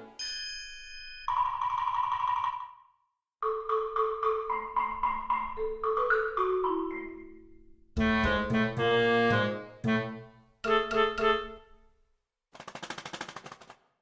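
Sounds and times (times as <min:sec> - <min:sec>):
marimba-like melody: 0:03.4 - 0:09.0.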